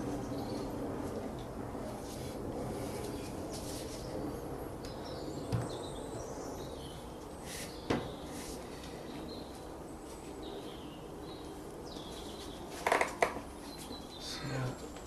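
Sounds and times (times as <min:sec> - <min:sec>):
birds chirping: 0:04.0 - 0:15.0.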